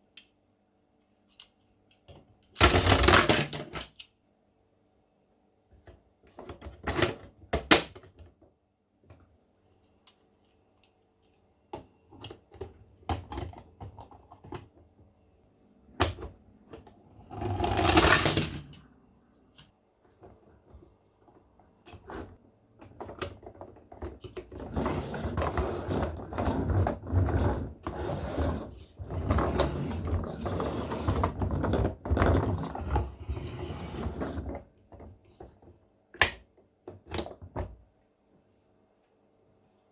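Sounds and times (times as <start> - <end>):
plastic rattling and clattering: 17.3 - 18.8.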